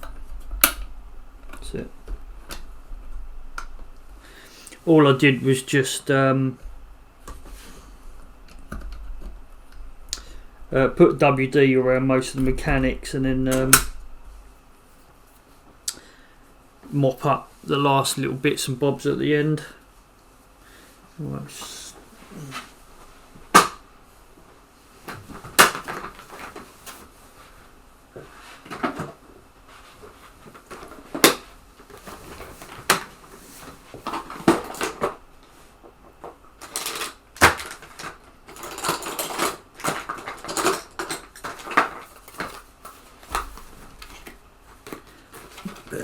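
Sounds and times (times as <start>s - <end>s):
rattling of mechanism: 36.6s - 42.7s.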